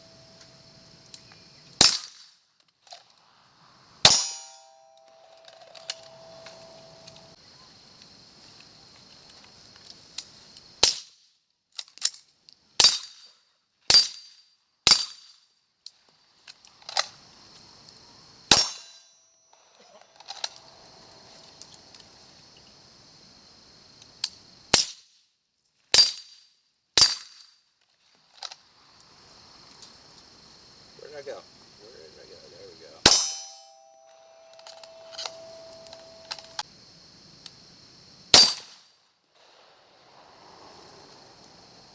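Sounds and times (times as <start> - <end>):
pistol shots: 1.8 - 2.2, 4.0 - 6.2, 18.5 - 18.9, 33.0 - 36.2, 38.3 - 38.8
faint high hiss: 3.0 - 10.8, 19.6 - 24.8, 28.3 - 38.4, 39.2 - 41.9.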